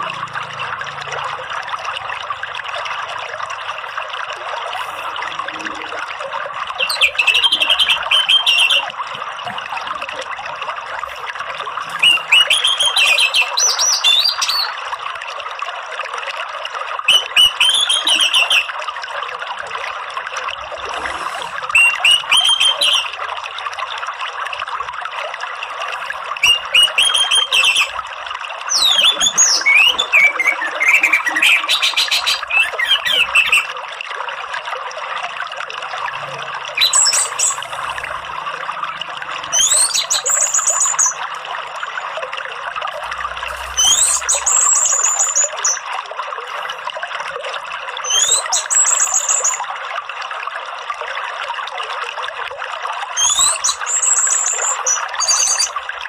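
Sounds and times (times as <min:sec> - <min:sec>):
running water: 0:00.0 - 0:56.0
bird twittering song: 0:06.7 - 0:08.8, 0:11.8 - 0:14.8, 0:17.1 - 0:18.7, 0:21.7 - 0:23.2, 0:26.4 - 0:28.0, 0:28.7 - 0:33.7, 0:36.7 - 0:37.8, 0:39.5 - 0:41.2, 0:43.5 - 0:45.8, 0:48.0 - 0:49.6, 0:53.2 - 0:55.8.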